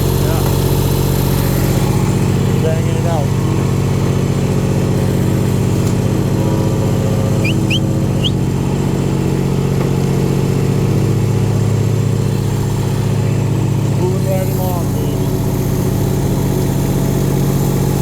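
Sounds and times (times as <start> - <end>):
paving machine engine running: 0.0 - 18.0
short high rising chirps: 7.4 - 8.4.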